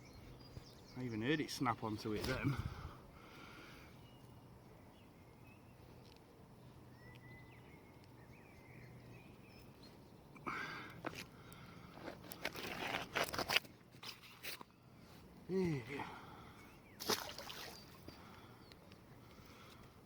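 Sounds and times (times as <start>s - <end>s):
faint high bird chirps: 6.6s - 10.1s.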